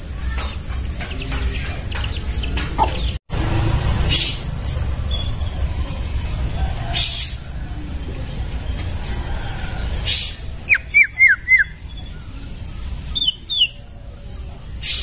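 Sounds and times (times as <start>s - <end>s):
raspy bird notes: 10.0s - 13.8s
bird singing whistled notes: 10.1s - 13.8s.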